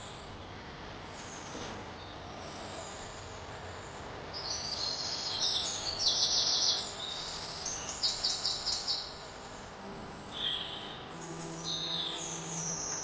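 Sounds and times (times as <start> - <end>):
faint background hiss: 0.0 - 13.0
songbirds chirping and trilling: 0.0 - 13.0.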